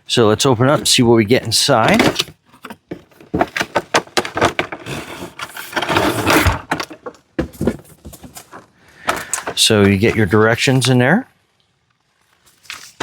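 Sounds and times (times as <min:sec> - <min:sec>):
packaging rustling and clicking: 0:01.8 - 0:10.4.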